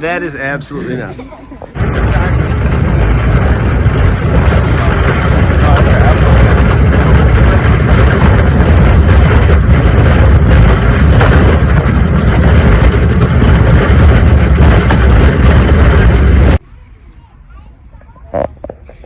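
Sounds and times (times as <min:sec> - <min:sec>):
loud rumbling noise with hiss: 0:01.7 - 0:16.6.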